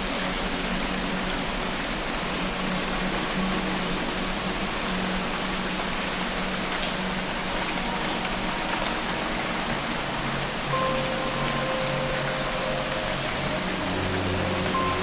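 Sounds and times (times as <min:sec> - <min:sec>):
dense rain falling: 0:00.0 - 0:15.0.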